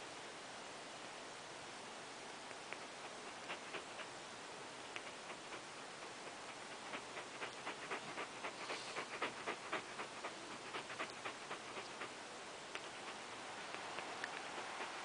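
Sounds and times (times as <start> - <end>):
dog panting: 2.7 - 4.1, 4.9 - 15.0.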